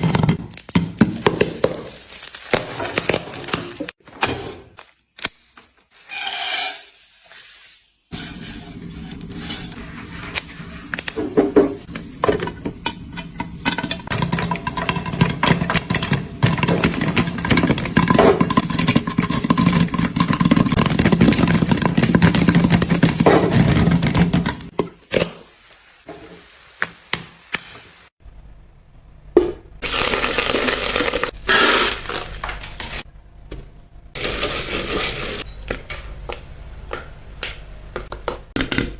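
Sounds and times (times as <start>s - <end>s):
popcorn popping: 0.0s - 3.9s, 10.4s - 25.3s, 29.4s - 33.6s, 34.2s - 38.9s.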